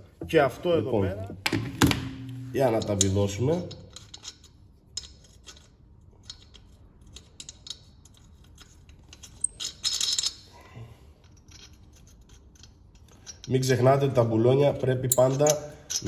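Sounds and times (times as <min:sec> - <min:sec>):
wheel bolts clinking: 0:15.0 - 0:16.0.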